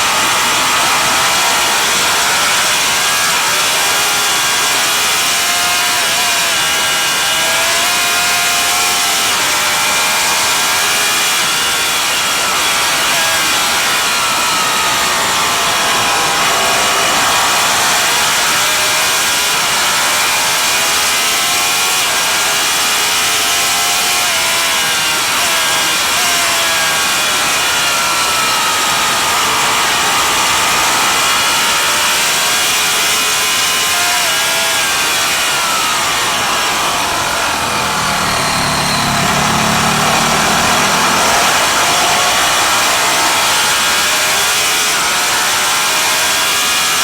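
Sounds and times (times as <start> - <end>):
racing motorcycle engine: 0.0 - 47.0
heavy wind rush: 36.2 - 44.6.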